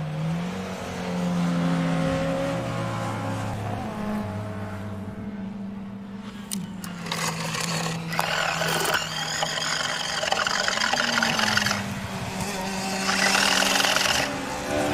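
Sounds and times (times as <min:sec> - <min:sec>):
wheels scraping over ground: 0:06.2 - 0:14.9
toy car electric motor hum: 0:06.5 - 0:14.8.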